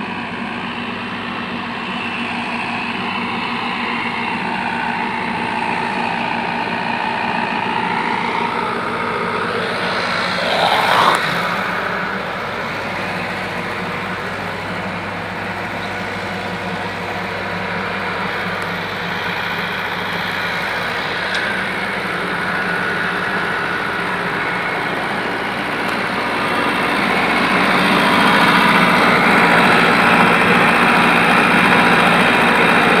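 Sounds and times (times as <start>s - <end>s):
excavator diesel engine running: 0.0s - 33.0s
rising whine: 7.4s - 13.8s.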